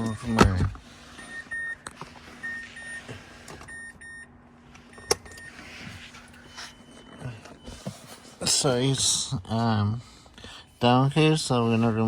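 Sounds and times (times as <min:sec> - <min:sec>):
car warning chime beeping: 0:00.0 - 0:01.8, 0:02.4 - 0:09.4
faint steady hum: 0:00.0 - 0:12.0.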